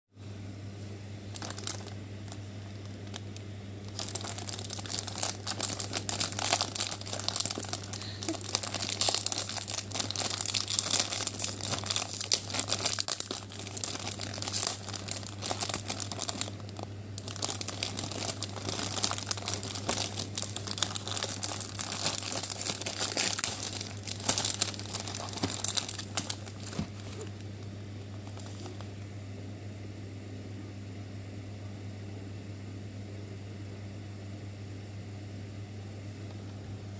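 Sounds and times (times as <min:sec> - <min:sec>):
low steady hum: 0:00.2 - 0:36.9
wrapper crinkling and tearing: 0:01.3 - 0:28.9.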